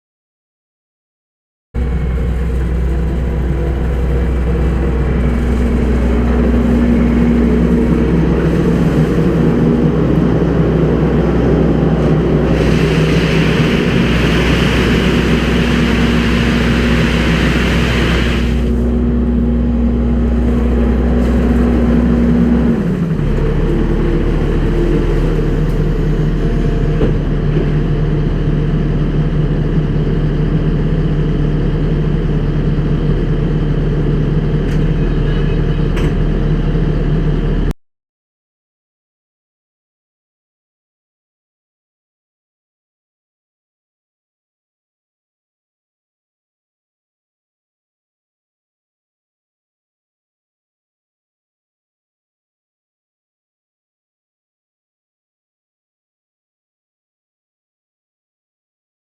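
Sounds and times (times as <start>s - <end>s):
diesel engine running: 1.8s - 37.8s
rushing hiss: 12.5s - 18.7s.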